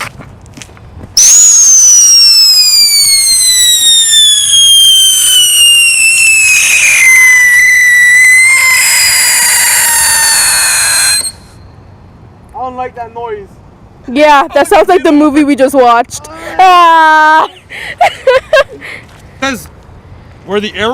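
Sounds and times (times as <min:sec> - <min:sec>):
whistling firework: 0:01.2 - 0:11.7.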